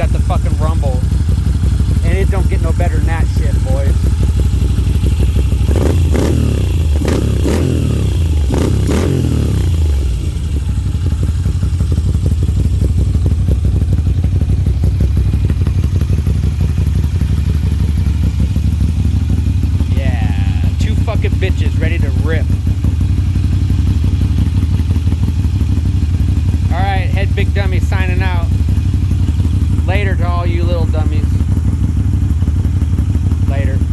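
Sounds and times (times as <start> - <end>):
motorcycle engine idling: 0.0 - 33.9
motorcycle engine revving: 0.0 - 33.9.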